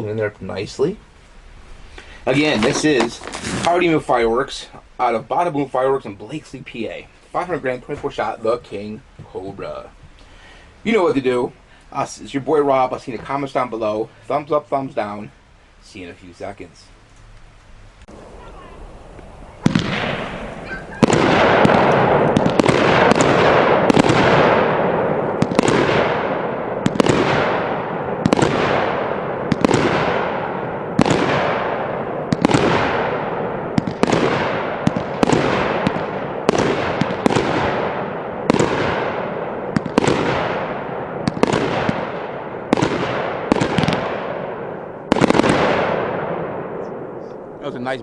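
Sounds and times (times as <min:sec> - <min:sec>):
firework bangs: 0:01.8 - 0:15.2, 0:18.1 - 0:48.0
rush of firework bursts: 0:18.0 - 0:48.0.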